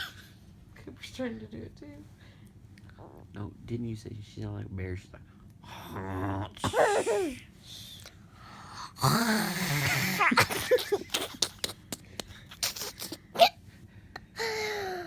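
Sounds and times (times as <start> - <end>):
person imitating snoring: 5.7 - 7.3, 8.9 - 10.4
mouth clicks and breath puffs: 11.1 - 13.3.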